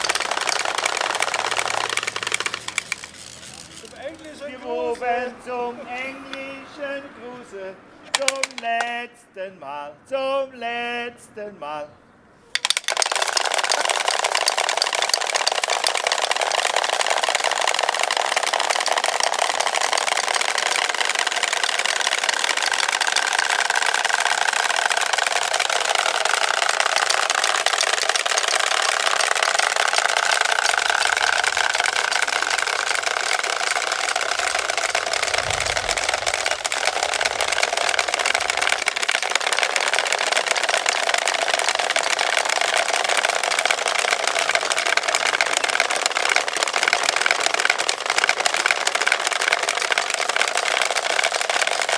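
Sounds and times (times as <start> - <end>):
wooden rattles clattering: 0.0 - 5.1, 8.1 - 9.0, 12.6 - 51.9.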